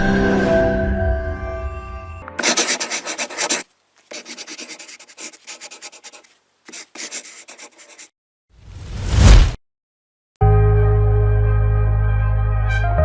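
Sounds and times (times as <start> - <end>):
rapid scratching strokes: 2.4 - 8.1.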